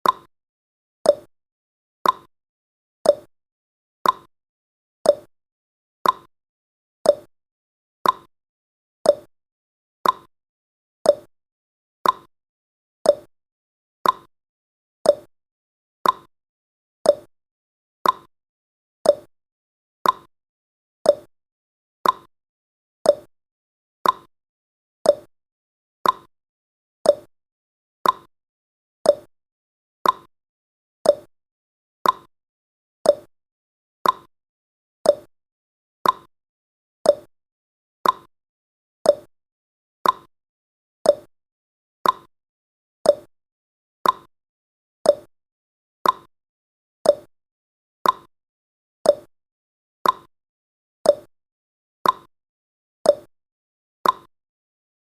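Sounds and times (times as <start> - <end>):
clock-like timer ticking: 0.0 - 0.3, 1.1 - 1.3, 2.0 - 2.3, 4.0 - 4.3, 6.0 - 6.3, 8.0 - 8.3, 9.1 - 9.3, 10.0 - 10.3, 12.0 - 12.3, 13.1 - 13.3, 14.0 - 14.3, 15.1 - 15.3, 16.0 - 16.3, 17.1 - 17.3, 18.0 - 18.3, 19.1 - 19.3, 20.0 - 20.3, 21.1 - 21.3, 22.0 - 22.3, 23.1 - 23.3, 24.0 - 24.3, 25.1 - 25.3, 26.0 - 26.3, 27.1 - 27.3, 28.0 - 28.3, 29.1 - 29.3, 30.0 - 30.3, 31.0 - 31.3, 32.0 - 32.3, 33.1 - 33.3, 34.0 - 34.3, 35.1 - 35.3, 36.0 - 36.3, 37.1 - 37.3, 38.0 - 38.3, 39.1 - 39.3, 40.0 - 40.3, 41.1 - 41.3, 42.0 - 42.3, 43.1 - 43.3, 44.0 - 44.3, 45.1 - 45.3, 46.0 - 46.3, 47.1 - 47.3, 48.0 - 48.3, 49.1 - 49.3, 50.0 - 50.3, 51.1 - 51.3, 52.0 - 52.3, 53.1 - 53.3, 54.0 - 54.3.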